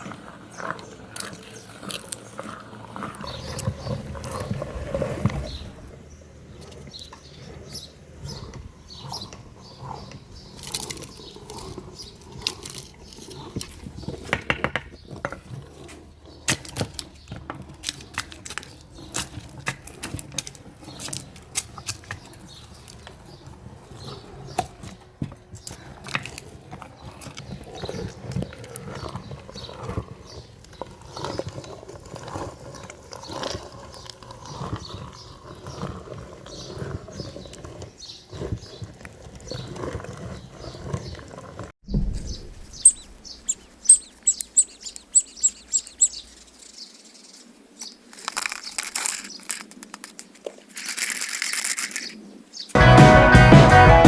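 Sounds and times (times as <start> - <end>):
grinder crunching hard plastic: 48.1 - 52.2.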